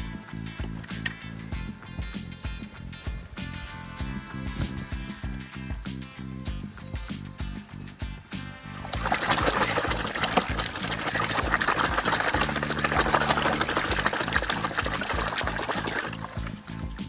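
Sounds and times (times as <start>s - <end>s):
background music with steady beat: 0.0s - 17.0s
water running and splashing: 8.8s - 17.0s.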